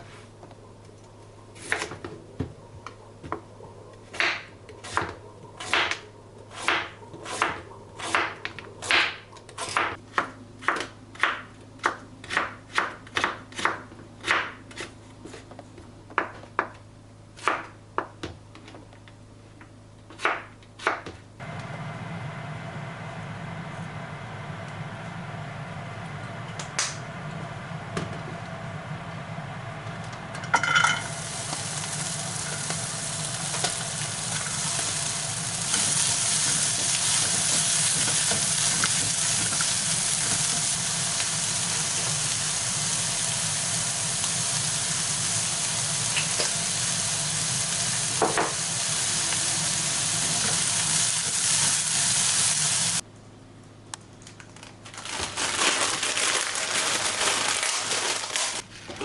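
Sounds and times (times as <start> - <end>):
food sizzling in hot oil: 30.6 - 53.0.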